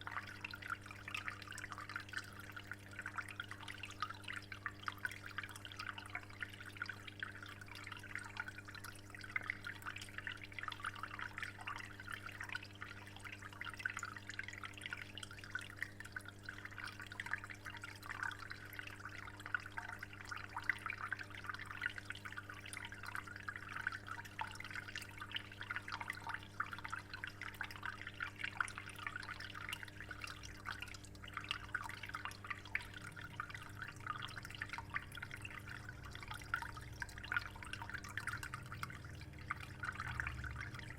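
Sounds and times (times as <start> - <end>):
aquarium water trickling: 0.0 - 40.9.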